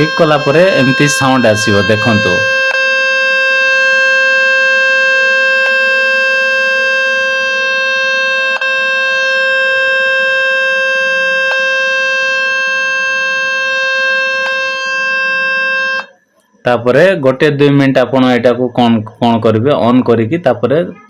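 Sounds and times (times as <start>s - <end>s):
buzzy tone from phone speaker: 0.0s - 16.2s.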